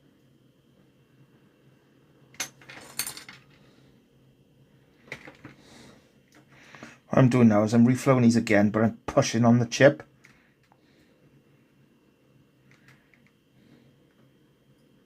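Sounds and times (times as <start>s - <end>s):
metal tools clinking on workbench: 2.4s - 3.4s.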